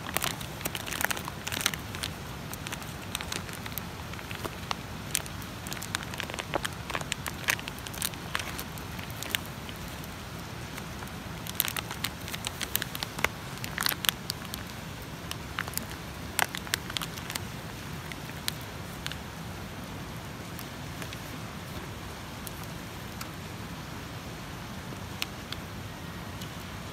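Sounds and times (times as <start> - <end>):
campfire crackling: 0.0 - 26.9
low background noise: 0.0 - 26.9.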